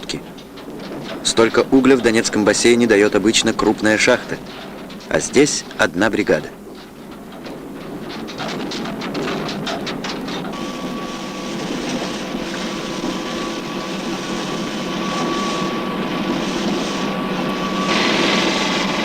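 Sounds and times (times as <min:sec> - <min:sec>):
constant high whine: 0:00.0 - 0:19.0
heavy machinery running: 0:00.0 - 0:19.0
loud hiss: 0:10.5 - 0:19.0.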